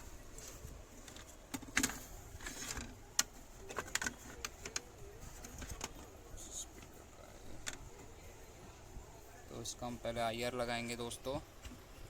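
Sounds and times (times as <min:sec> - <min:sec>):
clicks and knocks of connectors: 0:01.0 - 0:06.0.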